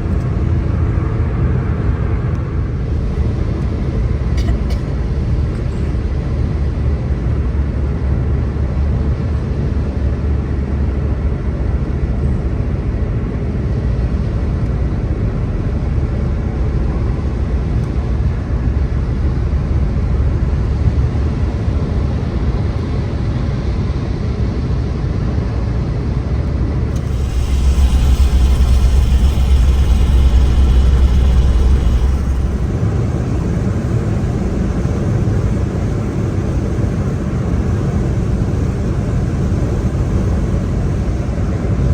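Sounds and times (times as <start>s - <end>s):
low road rumble: 26.9s - 33.6s.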